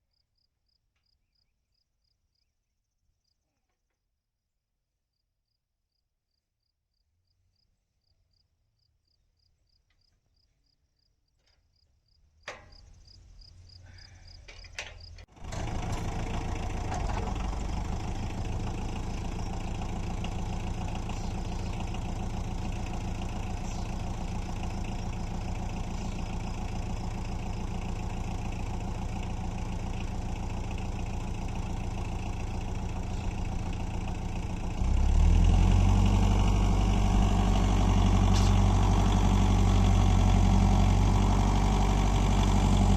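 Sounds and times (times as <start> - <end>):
faint cricket chirps: 0.0 - 3.7, 5.1 - 15.2
tractor engine running: 12.2 - 42.9.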